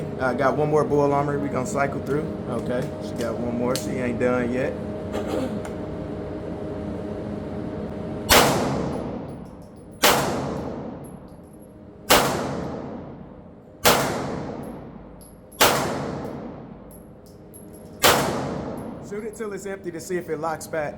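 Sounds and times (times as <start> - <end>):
pistol shots with echo: 8.3 - 9.2, 10.0 - 11.1, 12.1 - 13.2, 13.8 - 14.9, 15.6 - 16.7, 18.0 - 19.0.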